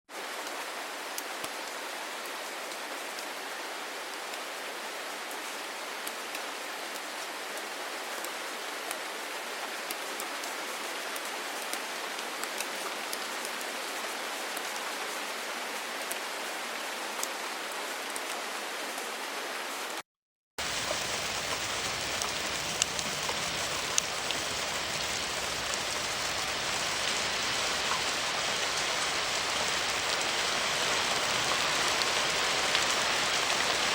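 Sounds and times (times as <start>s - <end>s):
steady rain falling: 0.1s - 20.0s, 20.6s - 33.9s
raindrops ticking: 20.6s - 33.9s.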